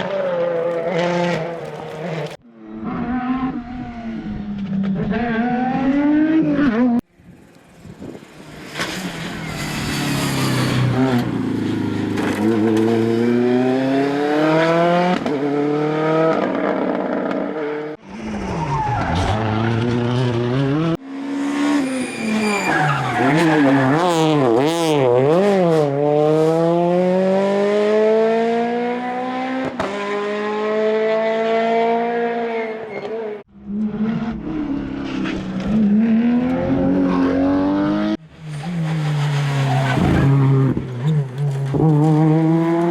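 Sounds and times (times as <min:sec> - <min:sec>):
rally car engines at full throttle: 0:00.0 - 0:42.9
tyre squeal: 0:21.4 - 0:24.6, 0:32.8 - 0:33.4, 0:38.4 - 0:41.7.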